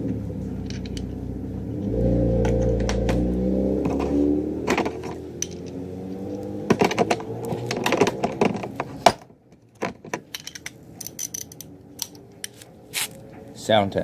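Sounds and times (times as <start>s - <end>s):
steady low hum: 0.0s - 9.6s
hand tools clicking and clattering: 4.7s - 5.8s, 6.7s - 13.1s.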